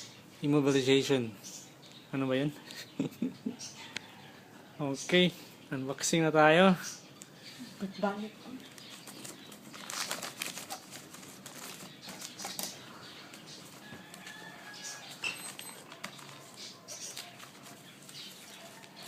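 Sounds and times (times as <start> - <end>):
packaging rustling and crinkling: 8.6 - 19.0.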